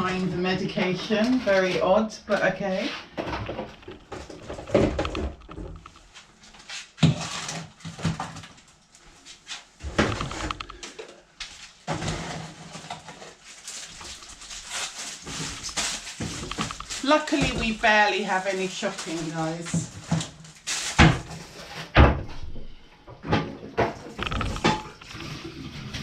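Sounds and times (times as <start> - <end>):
food packages clattering: 9.8 - 21.9, 23.3 - 25.3.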